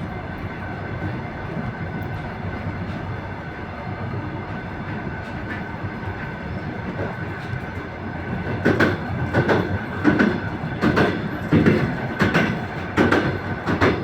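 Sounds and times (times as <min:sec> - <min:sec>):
train rumbling along track: 0:00.0 - 0:14.0
train wheels clattering over joints: 0:04.8 - 0:14.0.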